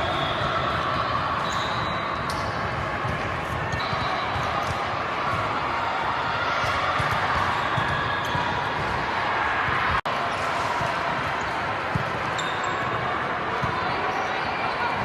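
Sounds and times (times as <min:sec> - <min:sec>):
din of many voices: 0:00.0 - 0:15.0
balls bouncing on gym floor: 0:02.2 - 0:05.6, 0:06.6 - 0:09.1, 0:11.8 - 0:12.5.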